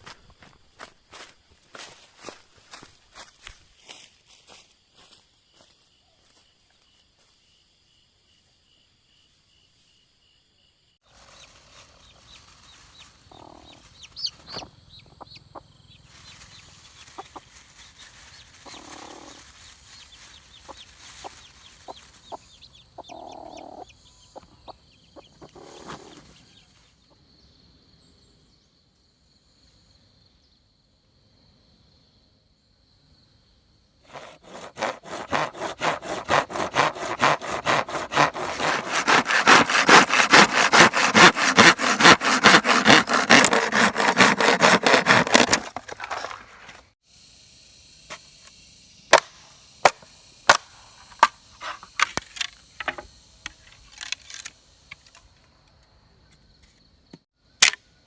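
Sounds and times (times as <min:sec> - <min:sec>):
chickens clucking: 0:11.1 - 0:26.4
clicks and scratching: 0:34.1 - 0:46.9.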